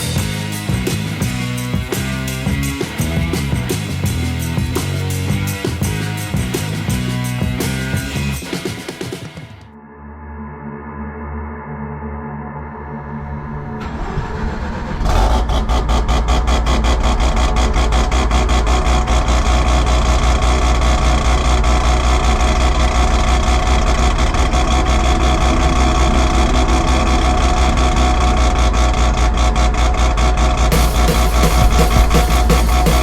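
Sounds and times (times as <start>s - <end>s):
rotary engine idling: 13.8s - 33.0s.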